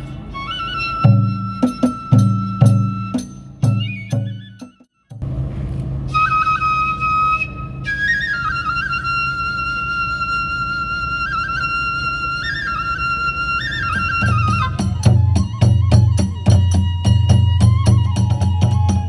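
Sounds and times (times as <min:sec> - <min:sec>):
bamboo flute playing trills: 0:00.0 - 0:05.2, 0:06.1 - 0:19.0
low steady hum: 0:05.2 - 0:18.9.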